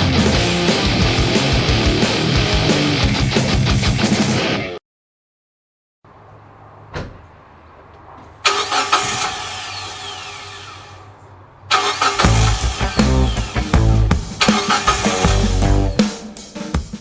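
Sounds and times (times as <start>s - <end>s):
car engine starting and idling rough: 8.4s - 11.0s, 11.7s - 16.0s.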